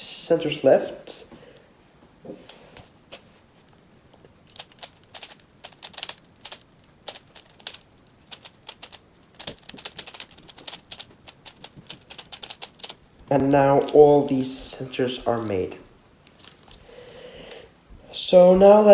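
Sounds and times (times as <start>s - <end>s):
puzzle cube clicking: 4.2s - 14.4s, 16.2s - 16.8s.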